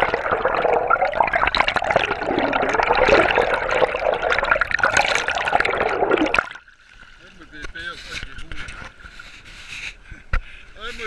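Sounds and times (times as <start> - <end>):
splashing water rushing: 0.0 - 6.6.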